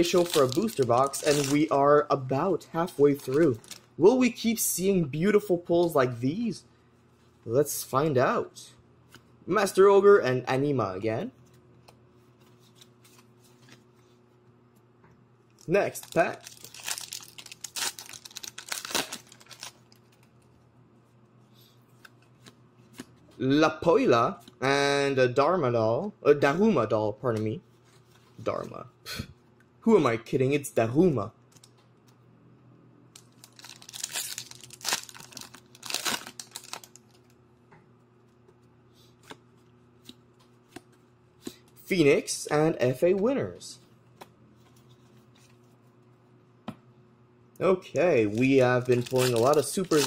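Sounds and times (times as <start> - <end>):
foil wrapper tearing and crinkling: 0.0 - 1.7, 15.6 - 20.3, 33.2 - 37.3, 48.3 - 50.0.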